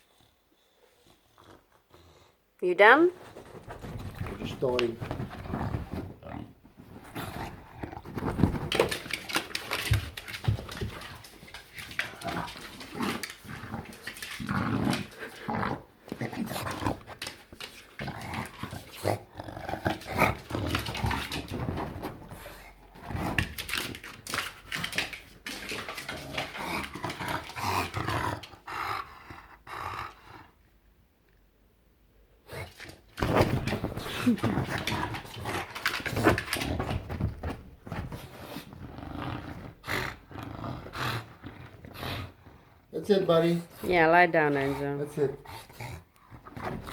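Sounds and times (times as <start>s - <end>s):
dog grunting and growling: 11.8s - 17.1s, 17.8s - 21.6s, 25.7s - 30.6s, 32.4s - 37.2s, 43.6s - 46.9s.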